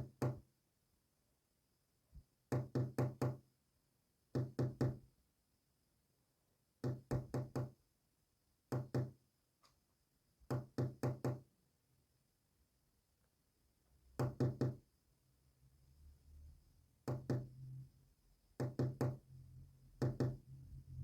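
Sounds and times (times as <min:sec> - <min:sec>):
knocking on hard surface: 0:02.5 - 0:03.4, 0:10.5 - 0:11.4, 0:14.2 - 0:14.8, 0:18.6 - 0:19.2, 0:20.0 - 0:20.4.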